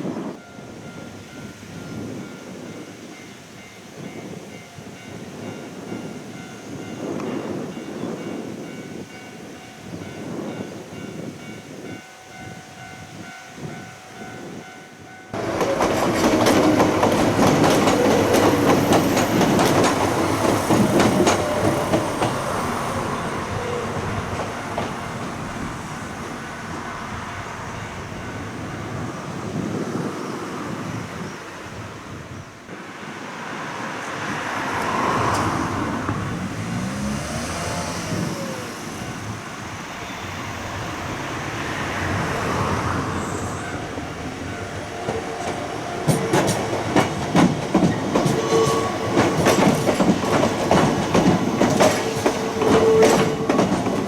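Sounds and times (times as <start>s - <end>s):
train wheels clattering over rail joints: 15.3s - 29.8s, 39.0s - 54.0s
crossing warning alarm: 37.6s - 54.0s.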